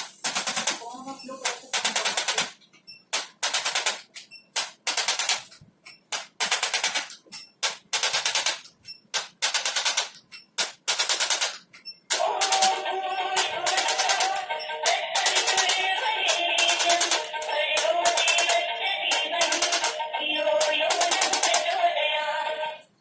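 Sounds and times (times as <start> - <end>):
background music: 12.1 - 23.0.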